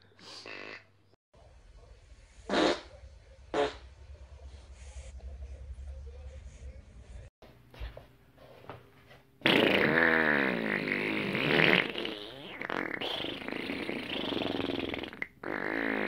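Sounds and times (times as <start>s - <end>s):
long wavering fart: 2.5s - 2.9s, 3.5s - 3.9s, 9.4s - 16.0s.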